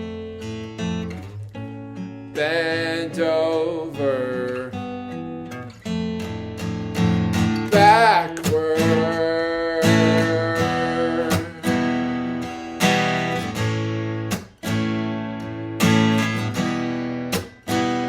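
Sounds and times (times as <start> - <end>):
acoustic guitar strummed chords: 0.0 - 18.0
person singing with vibrato: 2.4 - 4.8, 7.6 - 12.4.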